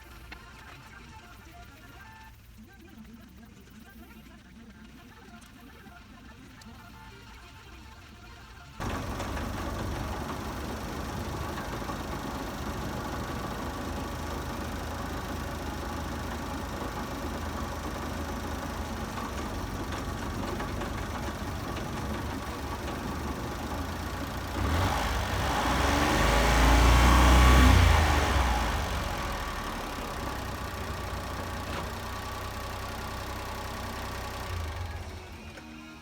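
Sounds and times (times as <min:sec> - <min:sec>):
truck engine running and revving: 0:08.8 - 0:35.7.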